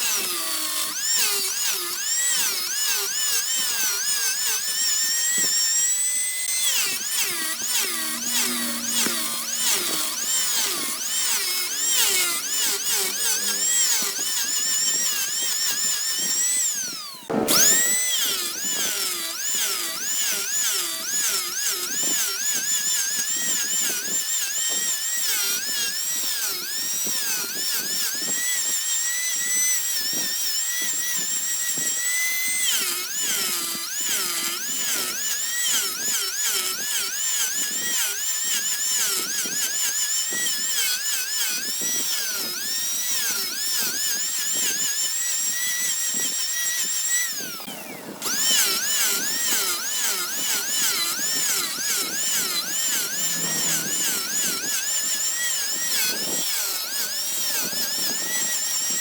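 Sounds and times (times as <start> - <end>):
high-pitched power tool whine: 0.0 - 59.0.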